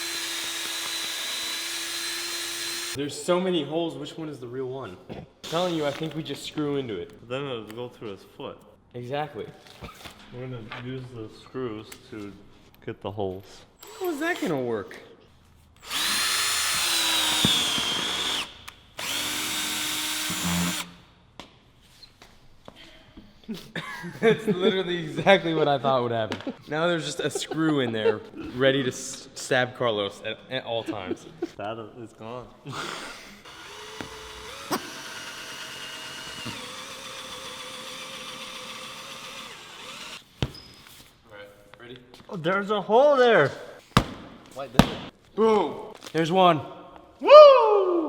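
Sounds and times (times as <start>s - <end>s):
power drill driving screw: 0.0s - 3.0s, 5.4s - 6.3s, 13.8s - 14.5s, 15.8s - 21.0s, 32.8s - 40.4s
sharp knock: 44.0s - 45.1s.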